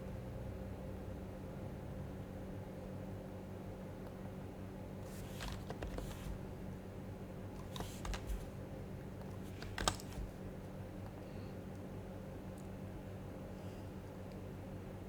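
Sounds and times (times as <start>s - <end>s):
keyboard keystrokes: 5.1s - 6.5s, 7.6s - 8.6s, 9.2s - 10.5s.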